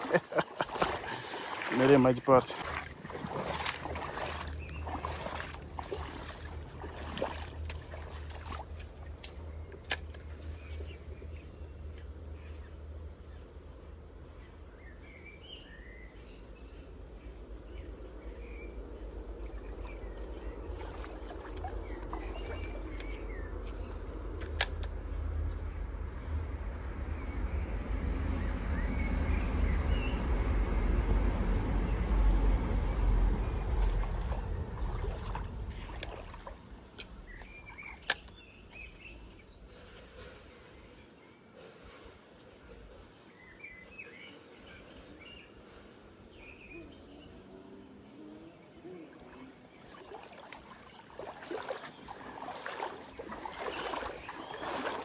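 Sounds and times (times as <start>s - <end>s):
small birds chirping: 0.0s - 30.4s, 32.7s - 55.0s
low rumble: 16.9s - 37.0s
sharp clicks: 24.4s - 25.0s, 37.0s - 38.4s.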